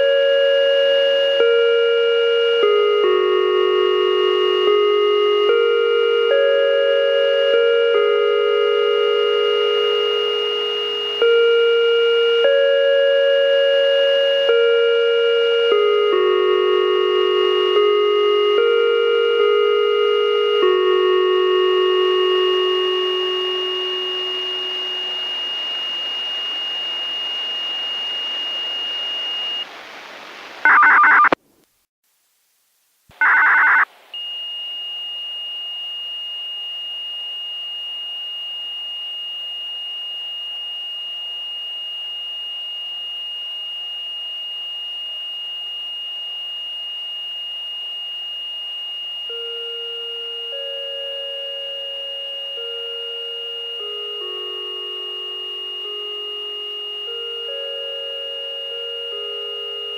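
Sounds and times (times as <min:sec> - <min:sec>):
radio hiss: 0:28.7 - 0:31.6, 0:33.1 - 0:33.9
loud signal-tone bursts: 0:30.6 - 0:31.4, 0:33.2 - 0:34.3
steady high radio tone: 0:30.6 - 0:31.4, 0:33.2 - 0:33.9.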